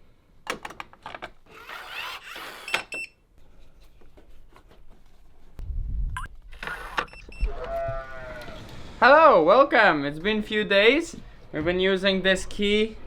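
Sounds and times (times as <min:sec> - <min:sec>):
door lock beeping: 0:02.6 - 0:03.2, 0:06.6 - 0:07.6.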